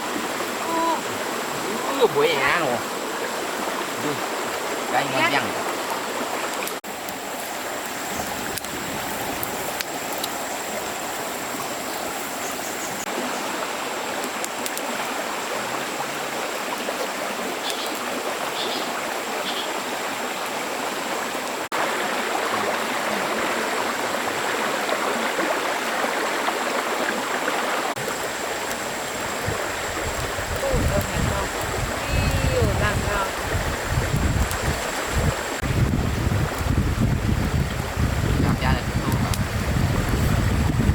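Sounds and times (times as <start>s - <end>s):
stream water flowing: 0.0s - 40.9s.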